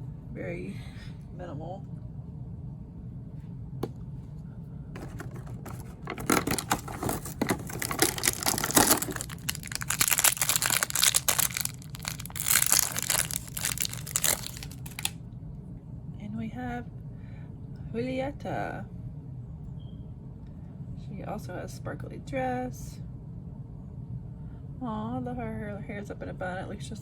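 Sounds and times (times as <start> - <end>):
packaging crinkling and tearing: 5.0 - 15.2.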